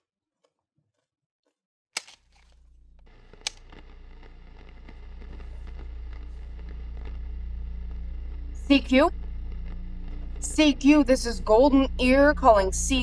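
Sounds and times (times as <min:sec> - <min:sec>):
radio static with low hum: 0:03.1 - 0:13.0.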